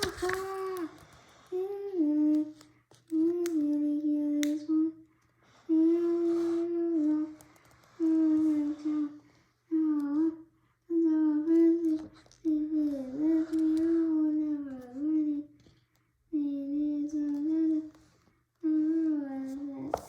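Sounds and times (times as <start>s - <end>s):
child humming: 5.7s - 7.4s.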